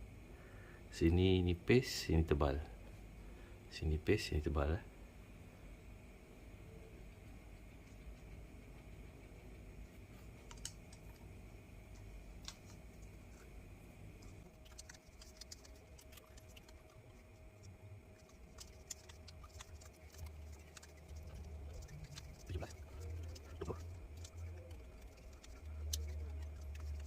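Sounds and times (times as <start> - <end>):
faint steady hum: 0.0 - 27.0.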